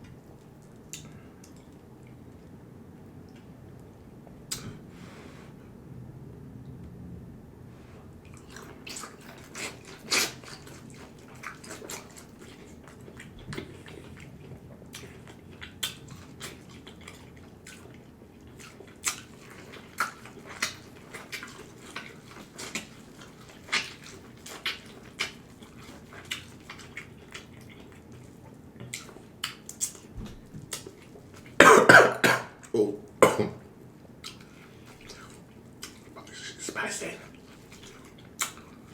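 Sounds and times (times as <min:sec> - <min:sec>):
wet chewing and lip smacks: 0:00.0 - 0:02.6, 0:08.2 - 0:31.6, 0:34.0 - 0:38.9.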